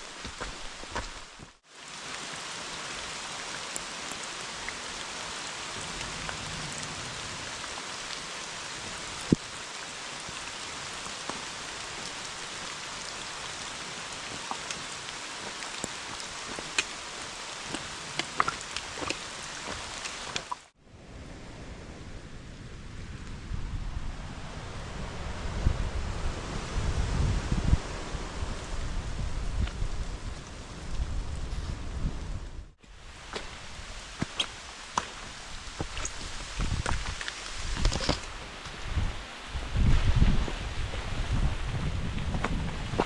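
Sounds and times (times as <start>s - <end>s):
steady rain falling: 0.0s - 43.0s.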